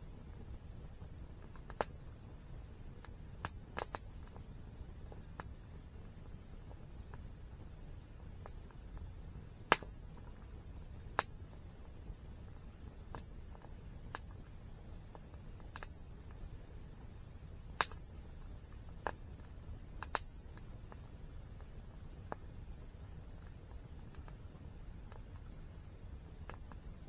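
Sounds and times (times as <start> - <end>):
campfire burning: 0.0 - 27.0
wood popping and crackling: 1.4 - 2.0, 3.0 - 6.1, 8.4 - 17.1, 17.7 - 22.4, 26.4 - 26.8.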